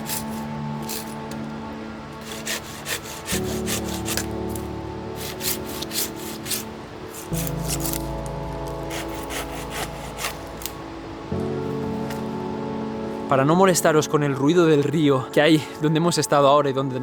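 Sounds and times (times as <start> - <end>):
background music with held chords: 0.0 - 17.0
hand saw rasping through wood: 2.2 - 4.3, 5.2 - 8.0, 8.9 - 10.7.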